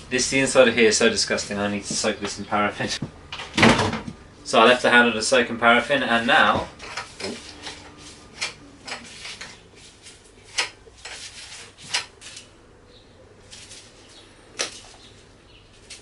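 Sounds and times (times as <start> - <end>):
parts rubbing: 4.6 - 12.6.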